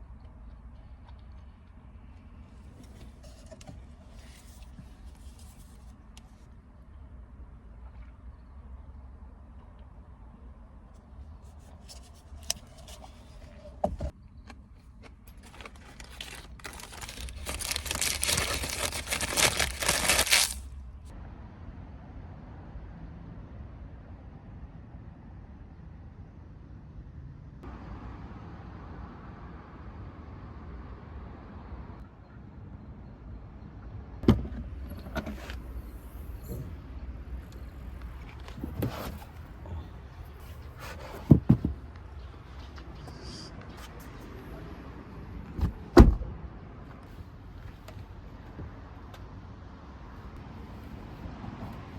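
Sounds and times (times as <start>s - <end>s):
crinkling tearing rustle: 15.3s - 20.7s.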